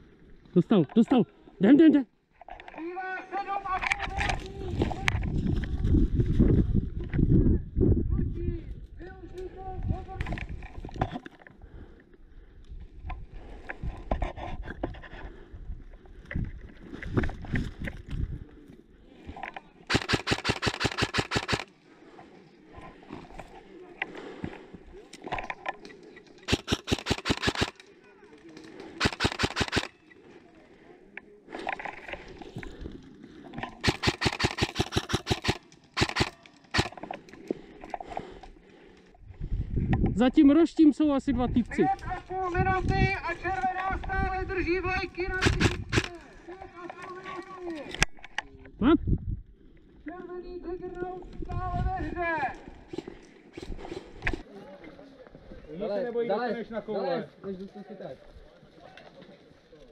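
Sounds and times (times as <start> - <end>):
wind rumble: 4.1 - 11.0
airsoft gun firing bursts: 19.9 - 21.7, 26.5 - 27.8, 29.0 - 30.0, 33.8 - 37.0, 45.4 - 46.1.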